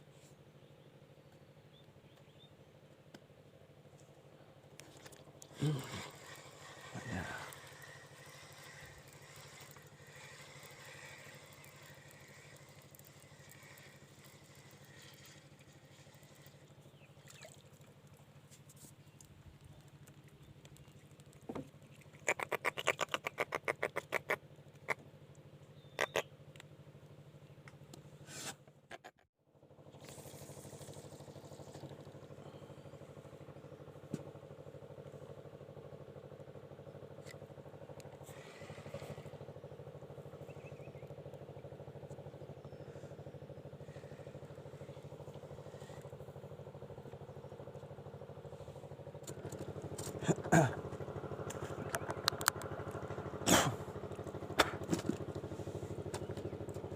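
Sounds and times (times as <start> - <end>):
steady motor hum: 0.0 - 56.9.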